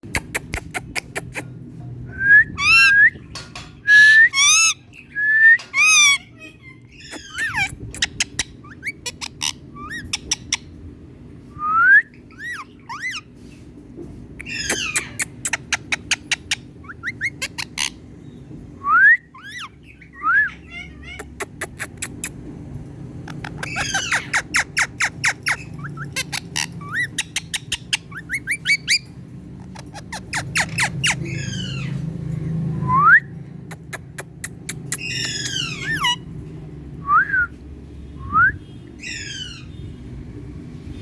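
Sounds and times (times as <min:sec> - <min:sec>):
parrot clicking chatter: 0:00.1 - 0:01.5, 0:07.0 - 0:10.7, 0:14.4 - 0:18.0, 0:21.1 - 0:22.4, 0:23.2 - 0:29.0, 0:29.6 - 0:31.4, 0:33.7 - 0:36.1
parrot rising whistles: 0:02.2 - 0:03.2, 0:03.9 - 0:06.1
parrot squawks: 0:03.9 - 0:04.8, 0:05.7 - 0:10.7, 0:12.4 - 0:13.3, 0:14.4 - 0:18.0, 0:23.3 - 0:31.9, 0:34.8 - 0:36.2.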